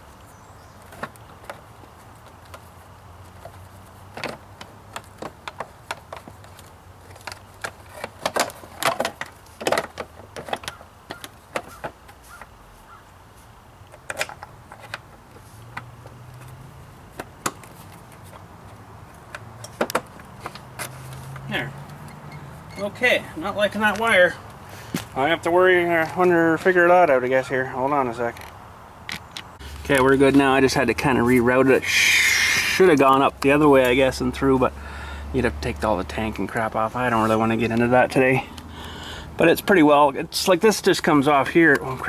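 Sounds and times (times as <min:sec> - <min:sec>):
hands clicking plastic parts: 0:03.4 - 0:12.6.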